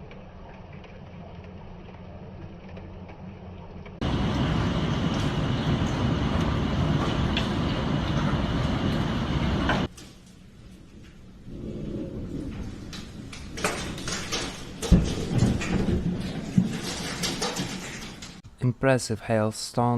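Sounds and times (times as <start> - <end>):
dense rushing storm noise: 4.0 - 9.9
heavy low rumble: 4.0 - 9.9.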